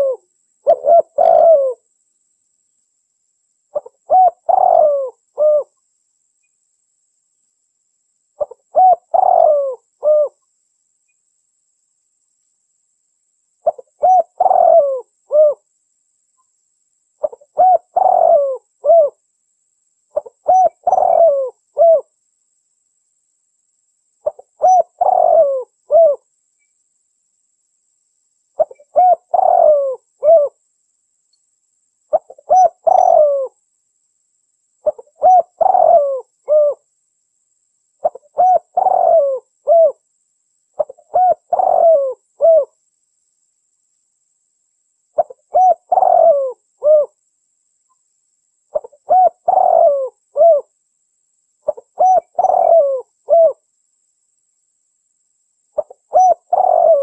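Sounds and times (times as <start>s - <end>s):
dove cooing: 0.0s - 1.8s, 3.7s - 5.8s, 8.4s - 10.4s, 13.6s - 15.6s, 17.2s - 19.2s, 20.2s - 22.1s, 24.2s - 26.2s, 28.6s - 30.6s, 32.1s - 33.6s, 34.8s - 36.8s, 38.0s - 40.0s, 40.8s - 42.8s, 45.2s - 47.2s, 48.7s - 50.7s, 51.7s - 53.6s, 55.8s - 57.0s.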